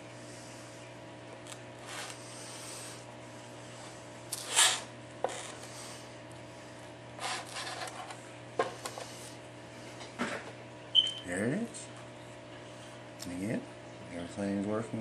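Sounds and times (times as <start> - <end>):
low electrical hum: 0.0 - 15.0
rubbing and rustling on workbench: 7.2 - 9.4.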